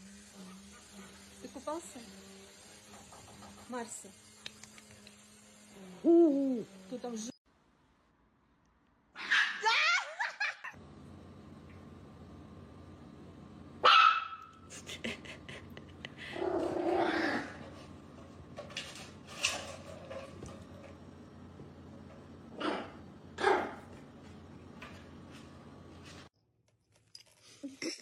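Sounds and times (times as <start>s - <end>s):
dog barking: 13.8s - 14.6s, 22.6s - 23.8s.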